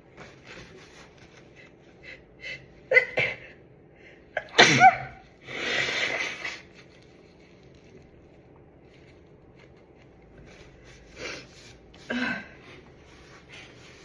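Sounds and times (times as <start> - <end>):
woman sneezing: 4.4 - 6.6.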